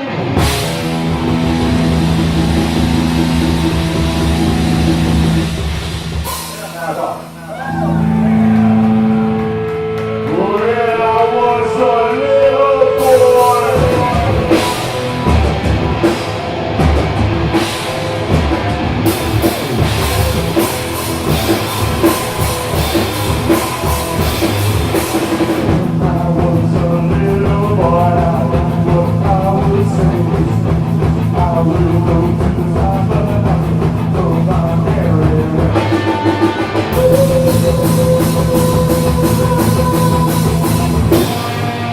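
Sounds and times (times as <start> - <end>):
rock band playing: 0.0 - 41.9
person singing: 7.3 - 15.4, 25.6 - 41.9.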